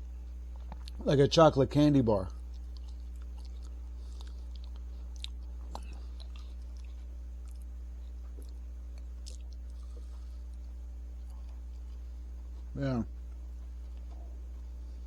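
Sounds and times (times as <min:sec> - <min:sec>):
steady low hum: 0:00.0 - 0:15.0
chewing and crunching candy: 0:00.1 - 0:01.2, 0:02.2 - 0:15.0.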